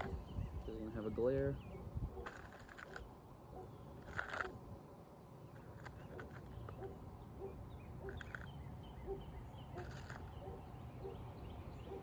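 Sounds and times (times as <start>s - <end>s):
shingle scraping and clicking: 2.2s - 4.8s, 5.4s - 7.1s, 8.0s - 8.6s, 9.6s - 10.6s.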